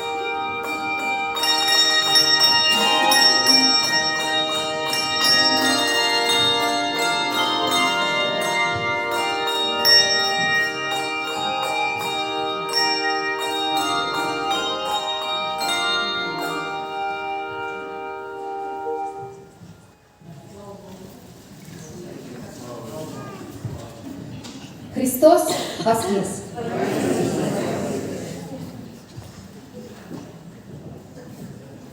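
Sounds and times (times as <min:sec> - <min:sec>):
bells ringing: 0:00.0 - 0:20.0.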